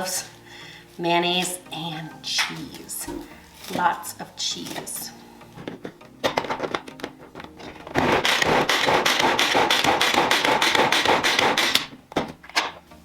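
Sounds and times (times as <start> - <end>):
rhythmic rasping scrapes: 7.1 - 11.9.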